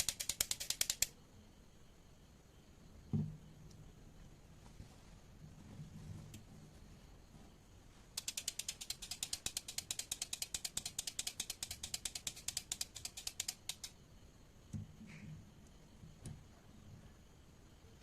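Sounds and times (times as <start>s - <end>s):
toy ratchet ticking: 0.0s - 1.2s, 8.2s - 14.0s.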